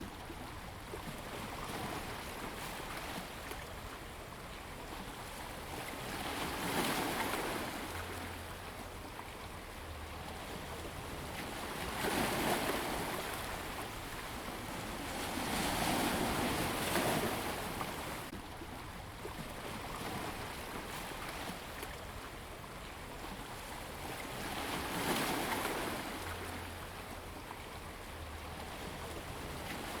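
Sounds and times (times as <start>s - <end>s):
ocean waves breaking: 10.2s - 22.2s.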